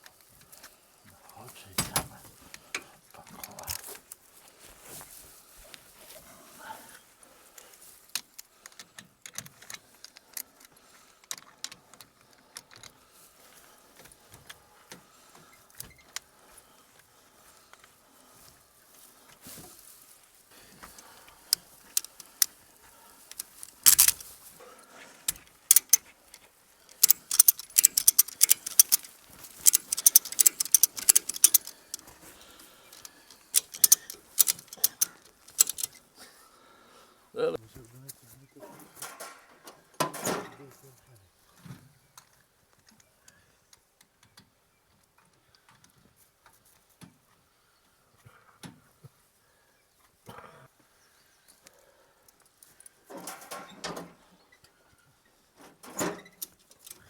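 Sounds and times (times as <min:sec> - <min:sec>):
rustling: 0:12.2 - 0:36.4
metal ratchet clicking: 0:23.3 - 0:24.3, 0:25.3 - 0:26.0, 0:26.9 - 0:32.1, 0:33.0 - 0:36.0.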